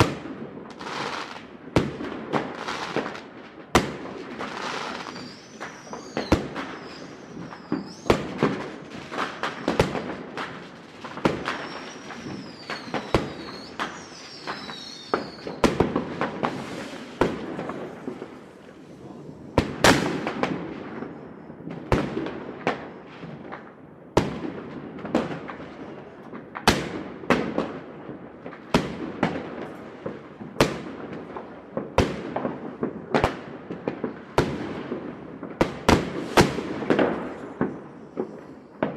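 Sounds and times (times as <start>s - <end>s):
fireworks bangs and crackles: 0.0s - 38.9s
high wavering whistle: 5.0s - 8.1s, 11.5s - 15.6s.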